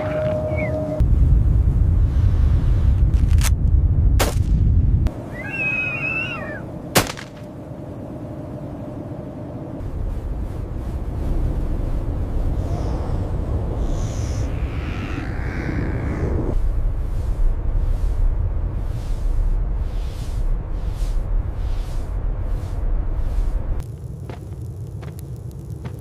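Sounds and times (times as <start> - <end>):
deep rumbling noise: 0.0 - 26.0
short wavering high cry: 5.3 - 6.6
sharp cracks: 6.9 - 7.5.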